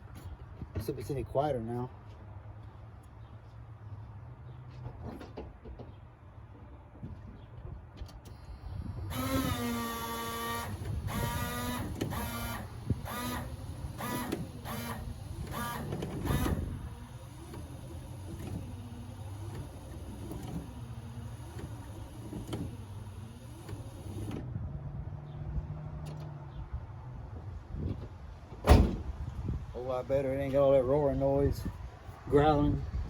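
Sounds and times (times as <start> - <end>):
wavering motor sound: 9.0 - 24.4.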